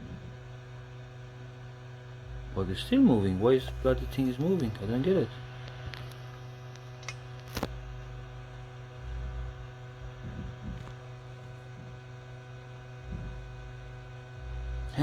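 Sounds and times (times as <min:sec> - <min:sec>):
electrical mains hum: 0:00.0 - 0:15.0
sharp click: 0:07.0 - 0:07.7.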